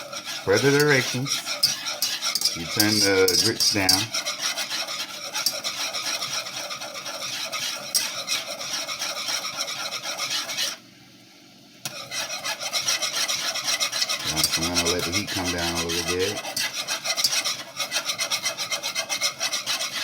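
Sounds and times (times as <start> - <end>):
utensil scraping a pot: 0.0 - 10.8, 11.9 - 20.0
water boiling: 0.0 - 20.0.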